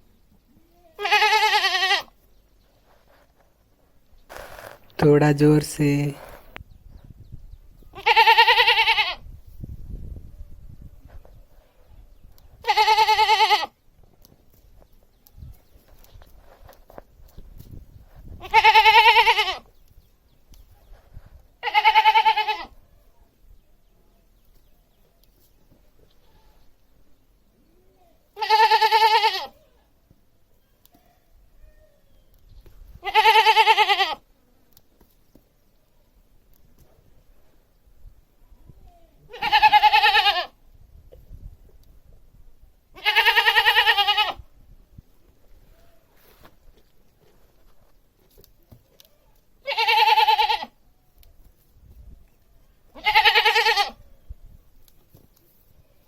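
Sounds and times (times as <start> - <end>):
goat bleating: 1.0 - 2.1, 8.0 - 9.2, 12.6 - 13.7, 18.4 - 19.6, 21.6 - 22.7, 28.4 - 29.5, 33.0 - 34.2, 39.3 - 40.5, 43.0 - 44.4, 49.6 - 50.7, 53.0 - 54.0.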